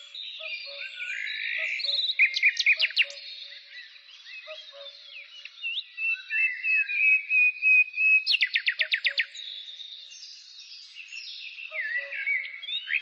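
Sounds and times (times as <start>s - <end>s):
songbirds chirping and whistling: 0.0s - 13.0s.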